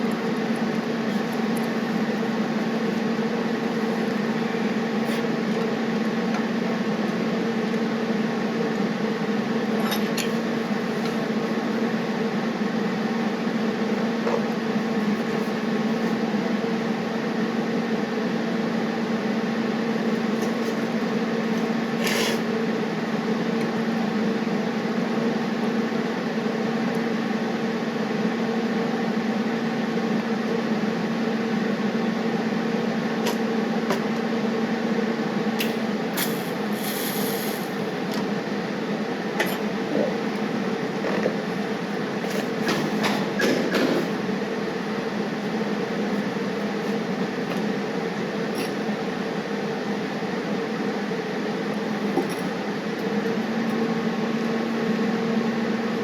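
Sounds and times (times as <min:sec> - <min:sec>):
torch flame hissing: 0:36.2 - 0:37.9.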